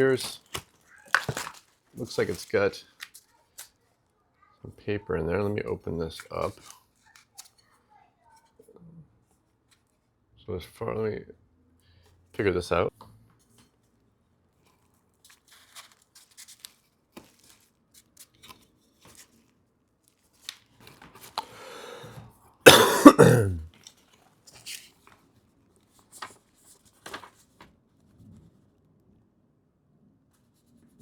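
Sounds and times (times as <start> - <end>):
paper and packaging handling clicks: 0.0 - 4.0, 6.2 - 7.8, 15.2 - 21.5, 23.7 - 27.8
person coughing: 22.7 - 23.7.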